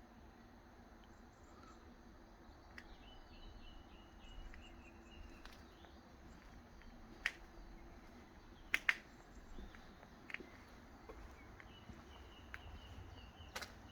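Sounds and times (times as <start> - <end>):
bird chirping: 1.1 - 13.9
sharp clicks: 8.7 - 9.1.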